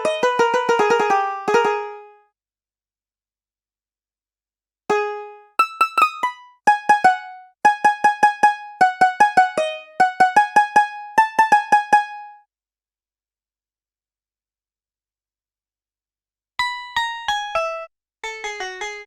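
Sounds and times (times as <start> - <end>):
plucked string instrument melody: 0.0 - 2.2, 4.9 - 12.4.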